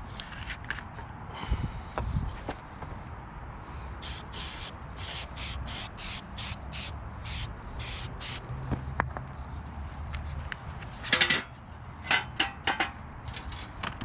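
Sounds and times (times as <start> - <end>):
spray can hissing bursts: 4.0 - 8.4.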